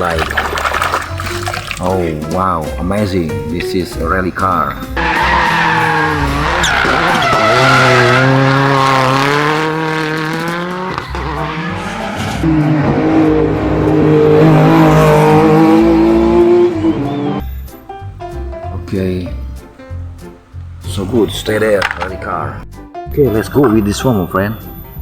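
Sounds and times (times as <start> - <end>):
race car engine revving: 4.9 - 17.5.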